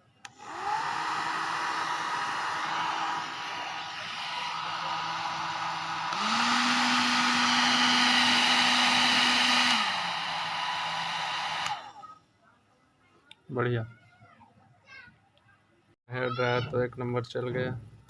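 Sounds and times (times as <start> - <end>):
hair dryer running: 0.2 - 12.0.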